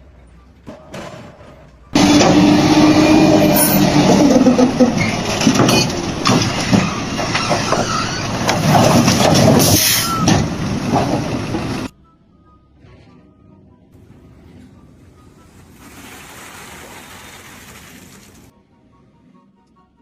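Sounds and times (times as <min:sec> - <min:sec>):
machinery running with clattering: 0:00.6 - 0:11.9.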